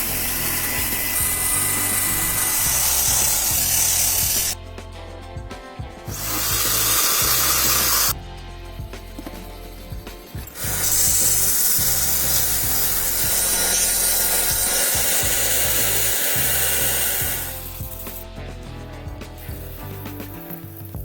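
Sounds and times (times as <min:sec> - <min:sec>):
power tool grinding steel: 0:00.0 - 0:04.6, 0:06.1 - 0:08.2, 0:10.2 - 0:18.3
background music: 0:00.0 - 0:21.0.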